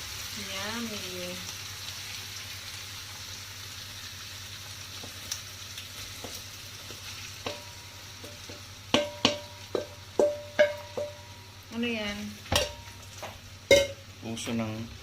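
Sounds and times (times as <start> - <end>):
onions sizzling in oil: 0.0 - 15.0
metal spatula tapping pan: 7.4 - 11.4, 12.5 - 13.0, 13.7 - 14.0
spatula clanging on pan: 7.4 - 11.4, 12.5 - 13.0, 13.7 - 14.0.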